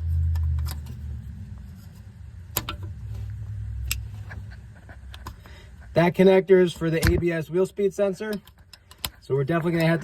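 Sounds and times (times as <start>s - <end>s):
low rumble: 0.0s - 5.2s.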